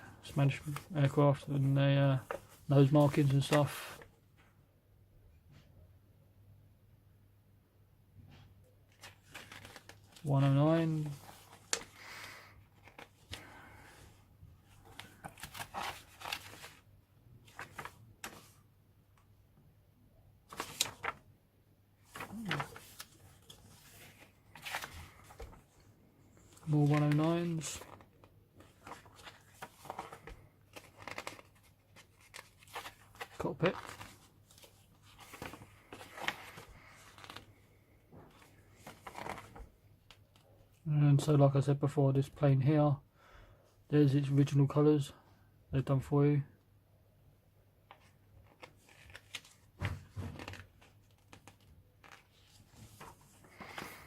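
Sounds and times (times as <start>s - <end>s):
book pages turning: 0.4s - 4.1s, 8.9s - 13.5s, 14.7s - 18.6s, 20.5s - 21.2s, 22.0s - 25.8s, 26.4s - 40.4s, 47.9s - 54.0s
paper rustling and flapping: 2.1s - 4.1s, 8.9s - 13.6s, 14.7s - 18.6s, 20.5s - 21.2s, 22.0s - 25.8s, 26.4s - 40.4s, 47.9s - 54.0s.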